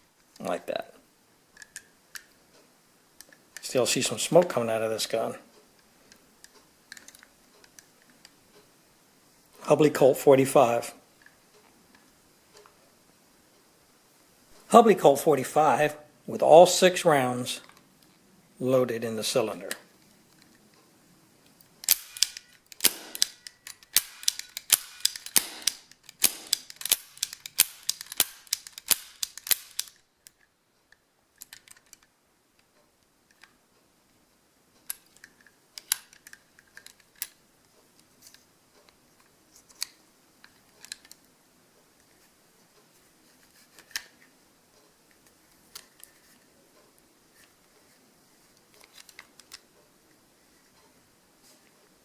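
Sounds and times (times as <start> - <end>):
metal toy gun clicks: 21.8 - 30.4, 34.9 - 37.4
cap pistol firing: 21.9 - 29.8.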